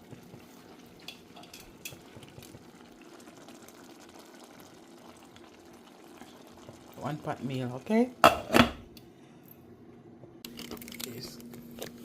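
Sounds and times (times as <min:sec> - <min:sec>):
rice simmering bubbling hiss: 0:00.0 - 0:08.2.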